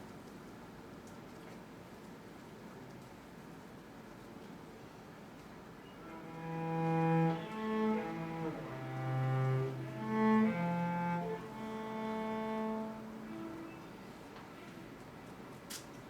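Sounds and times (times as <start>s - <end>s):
bowed cello melody: 6.0s - 14.7s.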